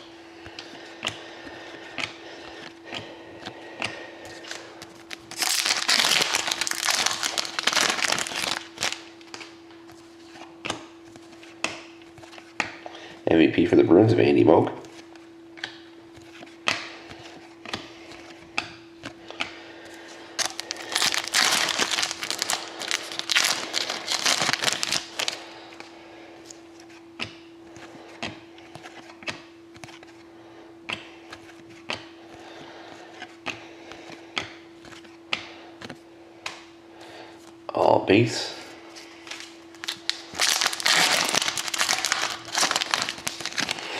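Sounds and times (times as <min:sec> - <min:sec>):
faint steady hum: 0:00.0 - 0:43.9
foil wrapper tearing and crinkling: 0:04.5 - 0:09.4, 0:20.4 - 0:25.5, 0:39.3 - 0:43.9.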